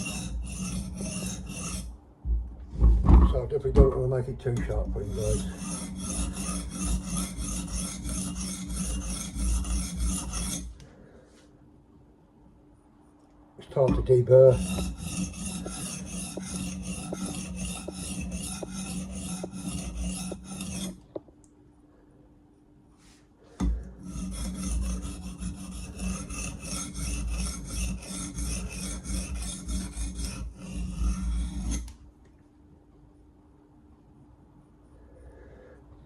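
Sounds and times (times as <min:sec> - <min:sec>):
blade scraping on sharpener: 0:00.0 - 0:01.9, 0:04.5 - 0:10.8, 0:13.8 - 0:21.0, 0:24.0 - 0:32.0.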